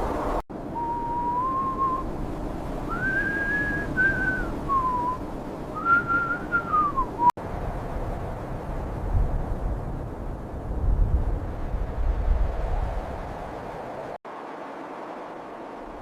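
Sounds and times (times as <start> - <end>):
whistled call: 0.7 - 2.1, 2.9 - 5.2, 5.8 - 7.3.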